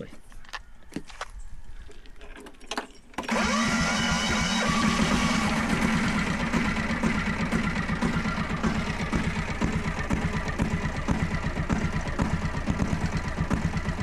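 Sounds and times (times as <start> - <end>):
diesel engine starting and running: 3.2 - 14.0.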